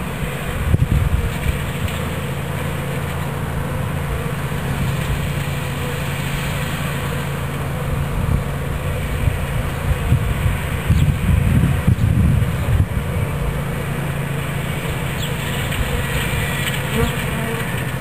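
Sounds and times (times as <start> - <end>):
honeybee swarm buzzing: 0.0 - 18.0.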